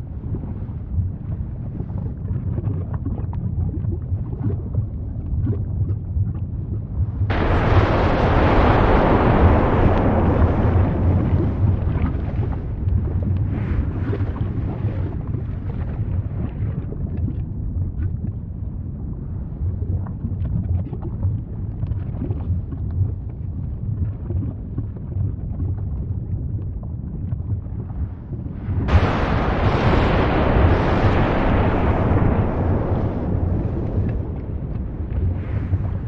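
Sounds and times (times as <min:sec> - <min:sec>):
volcano rumbling roar: 0:07.3 - 0:16.3, 0:28.4 - 0:36.0
small crackles: 0:07.3 - 0:17.5.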